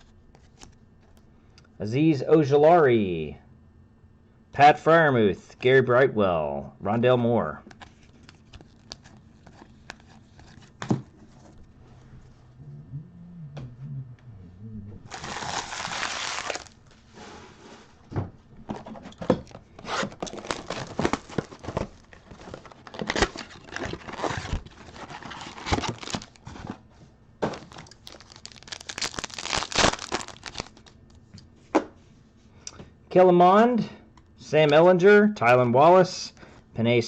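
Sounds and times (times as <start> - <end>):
card wrappers tearing and crinkling: 7.8 - 10.8, 15.1 - 16.8, 19.8 - 26.8, 27.5 - 31.1.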